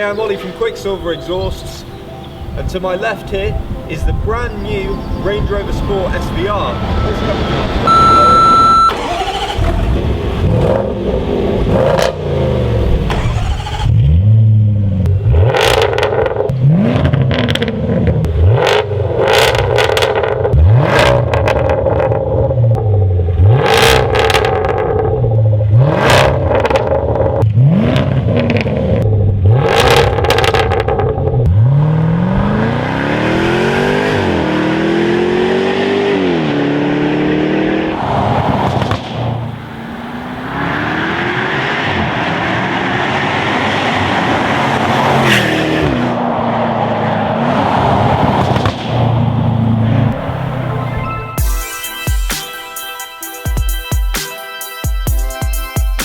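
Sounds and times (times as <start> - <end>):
car engine revving: 5.2 - 51.4
exhaust pops and crackles: 23.7 - 25.4, 28.4 - 31.6, 38.5 - 39.6, 48.2 - 50.3.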